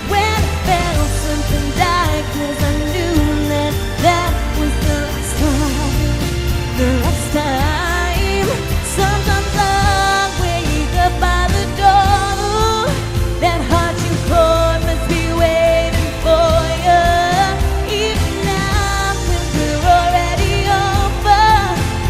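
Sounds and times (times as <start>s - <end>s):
backing music with bass and drums: 0.0s - 22.0s
woman singing pop ballad: 0.0s - 22.0s.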